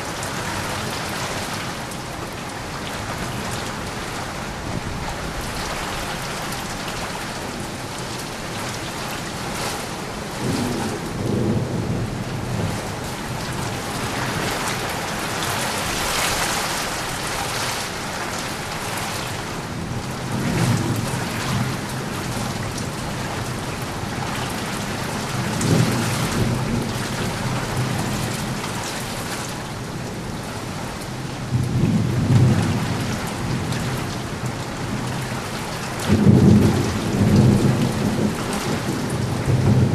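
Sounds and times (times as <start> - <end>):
heavy rain falling: 0.0 - 39.9
thunder rumbling: 36.0 - 39.9.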